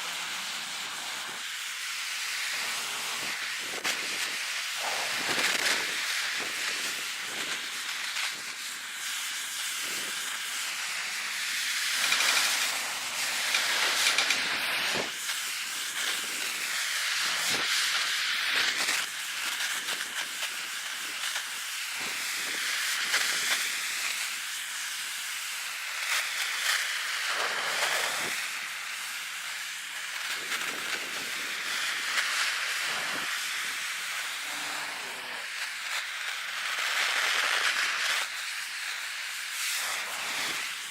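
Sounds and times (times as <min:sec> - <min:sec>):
gas torch flame hissing: 0:00.0 - 0:40.9.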